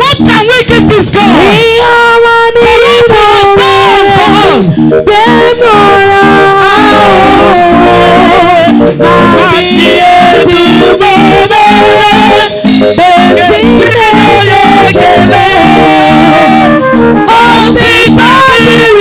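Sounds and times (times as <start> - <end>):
people singing: 1.0 - 19.0
instrumental band: 6.4 - 19.0.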